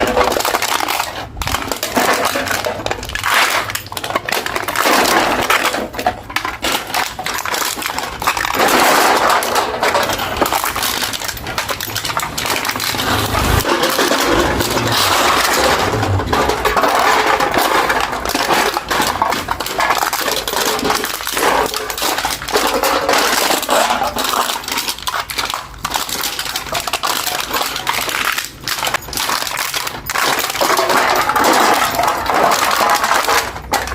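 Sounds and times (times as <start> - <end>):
beer can being crushed: 0.0 - 33.9.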